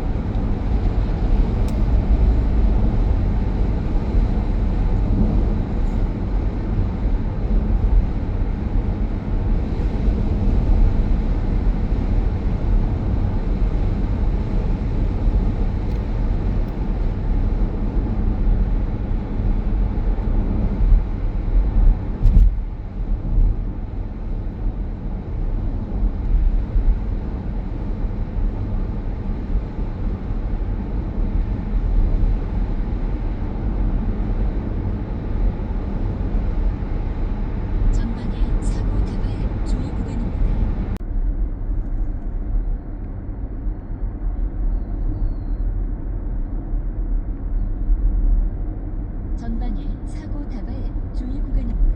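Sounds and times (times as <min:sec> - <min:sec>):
car road and tyre noise: 0:00.0 - 0:51.9.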